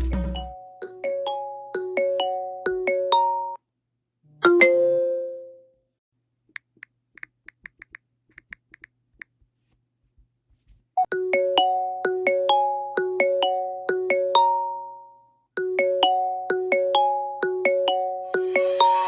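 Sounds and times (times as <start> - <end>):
marimba ringtone melody: 0.0 - 3.6, 4.5 - 5.4, 11.1 - 15.0, 15.6 - 19.0
two-note chime: 18.2 - 19.0.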